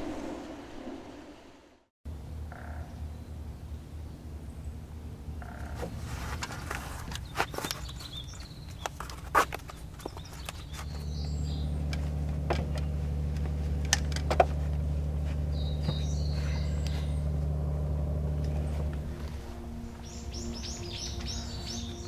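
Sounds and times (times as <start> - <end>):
low engine hum: 0.0 - 22.0
bird chirps: 7.1 - 13.0, 15.4 - 17.6, 18.2 - 22.0.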